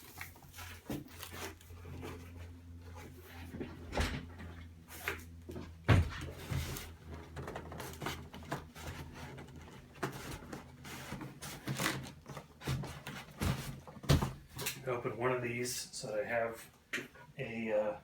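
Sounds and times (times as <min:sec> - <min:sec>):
cardboard box being opened: 0:00.0 - 0:03.5, 0:06.2 - 0:14.4.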